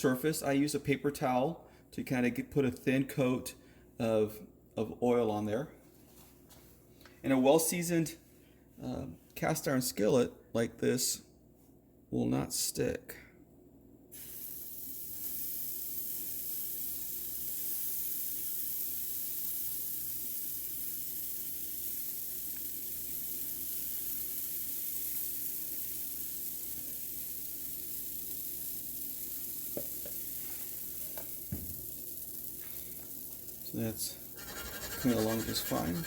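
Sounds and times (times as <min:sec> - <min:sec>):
batter sizzling in skillet: 0:14.2 - 0:33.7.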